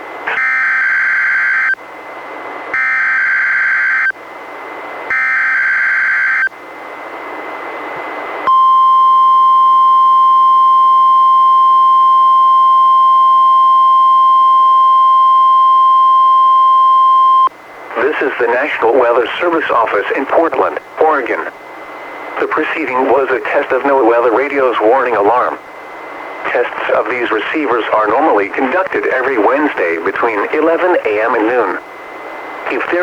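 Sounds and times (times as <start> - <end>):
steady warning alarm tone: 0.2 - 2.0, 2.7 - 4.4, 5.1 - 6.6, 8.5 - 27.0
radio hiss: 17.8 - 33.0.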